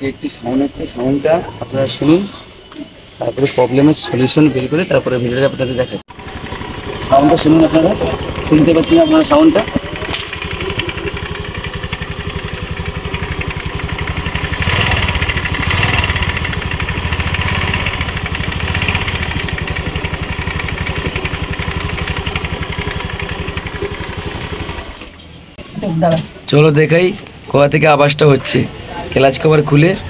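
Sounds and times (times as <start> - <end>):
scooter engine with mechanical noise: 4.5 - 25.6.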